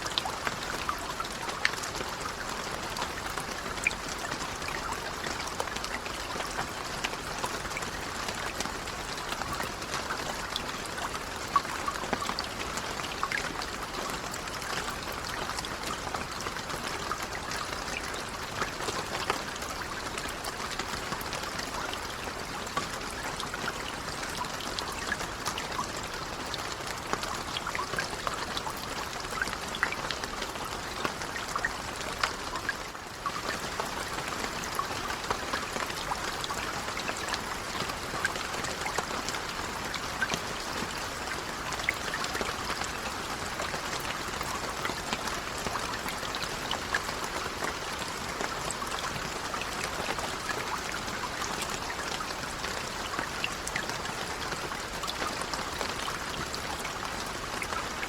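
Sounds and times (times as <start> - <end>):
gentle rain with ticking drops: 0.0 - 58.0.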